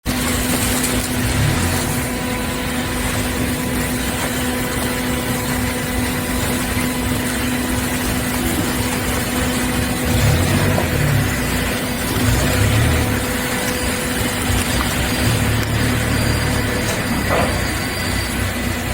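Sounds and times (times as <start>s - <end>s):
hydraulic baler humming: 0.0s - 18.9s.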